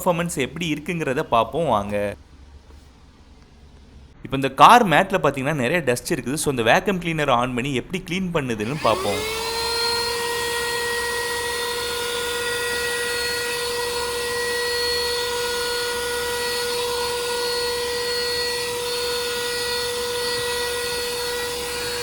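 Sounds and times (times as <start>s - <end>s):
car vacuum cleaner running: 8.6s - 22.0s.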